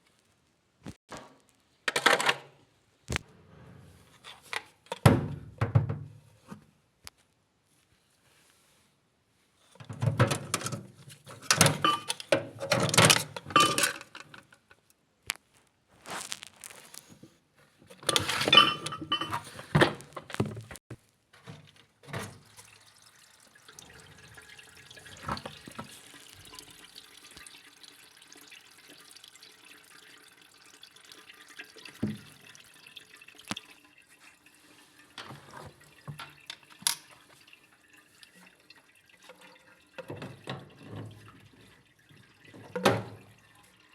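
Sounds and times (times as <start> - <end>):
water splashing and dripping: 22.1 - 43.9.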